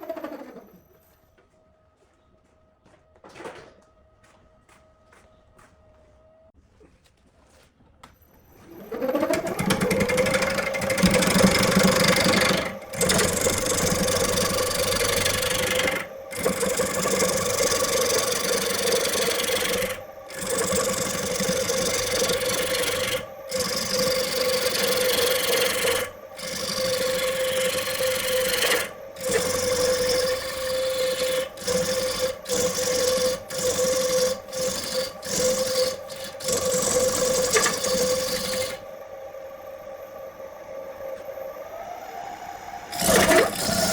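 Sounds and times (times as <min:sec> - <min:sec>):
wood lathe motor running: 0:00.0 - 0:00.8, 0:08.6 - 0:43.9
tool scraping spinning wood: 0:00.0 - 0:00.9, 0:08.5 - 0:39.0, 0:42.9 - 0:43.9.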